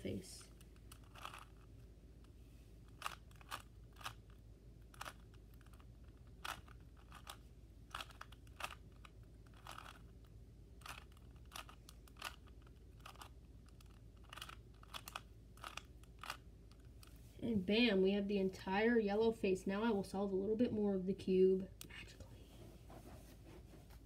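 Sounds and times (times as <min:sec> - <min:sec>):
puzzle cube plastic clicks: 0:00.5 - 0:17.2.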